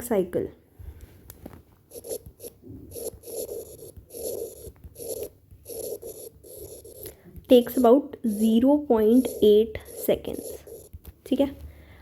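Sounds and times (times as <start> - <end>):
pen scraping on paper: 1.9 - 7.6, 8.3 - 11.0.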